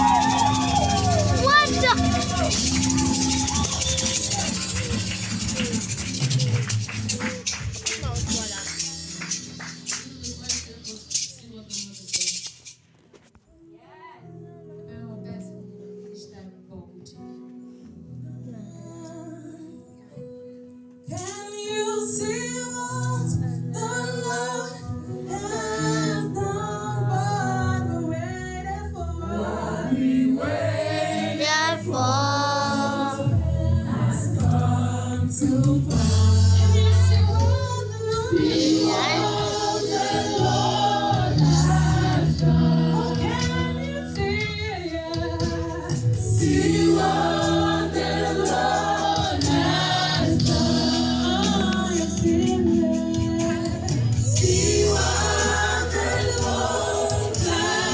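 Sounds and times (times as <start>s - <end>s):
gospel choir singing: 0.0s - 10.6s, 23.8s - 57.9s
low instrumental backing: 0.0s - 19.5s, 25.3s - 57.9s.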